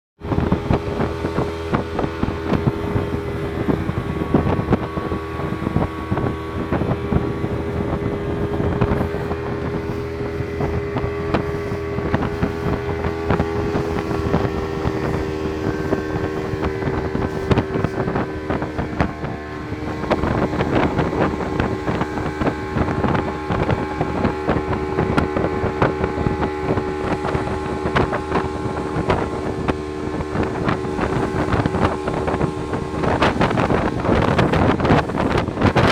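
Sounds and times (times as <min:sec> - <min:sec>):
motorboat engine running: 0:00.2 - 0:35.9
wind buffeting microphone: 0:00.2 - 0:35.9.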